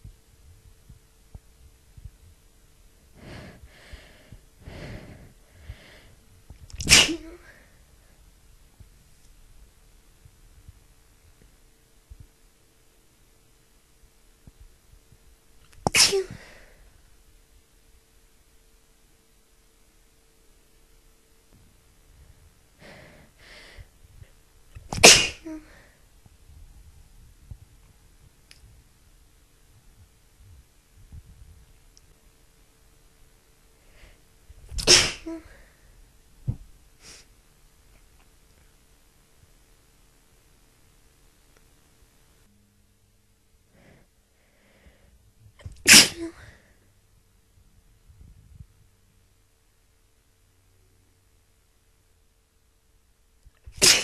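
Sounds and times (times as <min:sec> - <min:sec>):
quick gasping breaths: 0:03.1 - 0:06.3, 0:16.1 - 0:17.0, 0:22.8 - 0:24.4
person sneezing: 0:06.8 - 0:07.8, 0:15.8 - 0:16.8, 0:24.9 - 0:25.9, 0:34.7 - 0:35.7, 0:45.6 - 0:46.7, 0:53.7 - 0:54.0.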